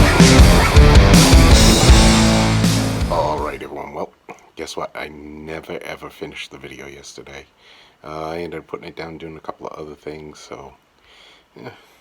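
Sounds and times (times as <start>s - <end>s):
distorted guitar: 0.0s - 3.6s
rock music: 0.0s - 3.6s
steady drum beat: 0.0s - 3.6s.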